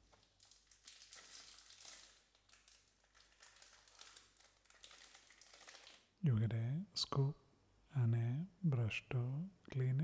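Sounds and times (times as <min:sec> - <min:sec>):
packaging crinkling: 0:00.0 - 0:06.1.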